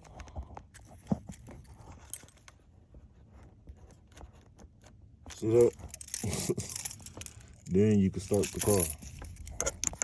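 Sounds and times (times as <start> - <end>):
keys jangling and clicking: 5.3 - 10.0.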